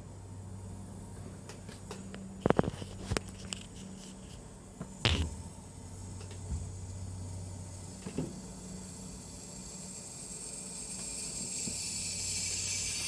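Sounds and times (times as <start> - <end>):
low steady hum: 0.0 - 13.0
high hissing: 7.2 - 13.0.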